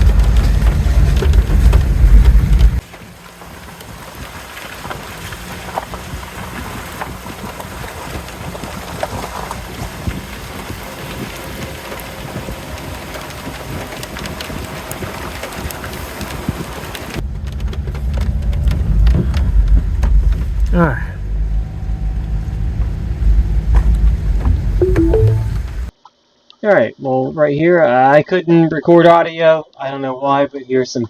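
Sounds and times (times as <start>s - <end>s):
raindrops ticking: 0.0s - 18.8s
rain falling: 0.0s - 25.9s.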